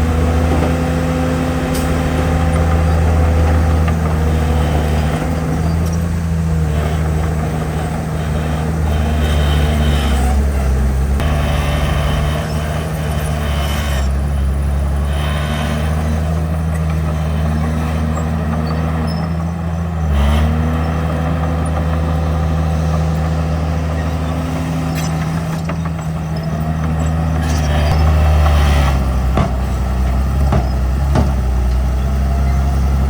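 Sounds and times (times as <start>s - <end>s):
heavy diesel engine running: 0.0s - 33.0s.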